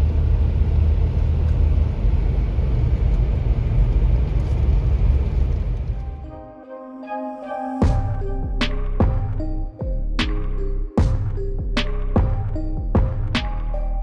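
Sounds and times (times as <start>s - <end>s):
music: 5.9s - 14.0s.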